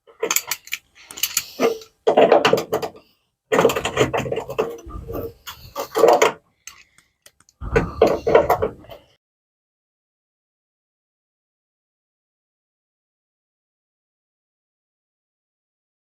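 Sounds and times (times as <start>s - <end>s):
metal clinking and grating: 0.1s - 2.9s.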